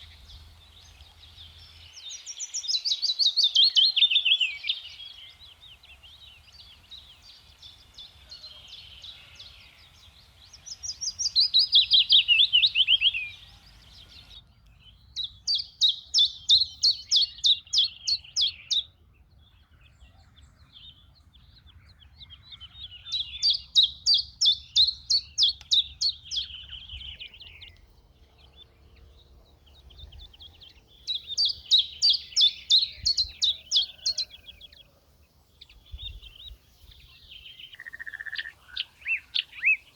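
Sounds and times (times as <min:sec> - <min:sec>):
songbird singing high notes: 0:00.0 - 0:18.8, 0:29.8 - 0:34.7, 0:35.6 - 0:39.9
soft bird chirps: 0:00.0 - 0:39.9.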